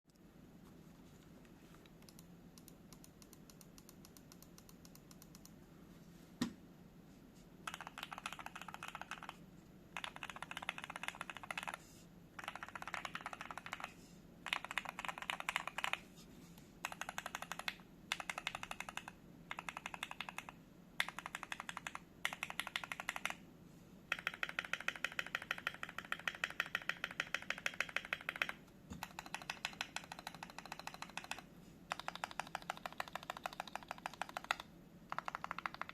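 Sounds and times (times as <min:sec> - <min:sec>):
mechanical keyboard typing: 0:07.6 - 0:09.4, 0:10.0 - 0:11.8, 0:12.4 - 0:16.0, 0:16.8 - 0:23.4, 0:24.1 - 0:35.9.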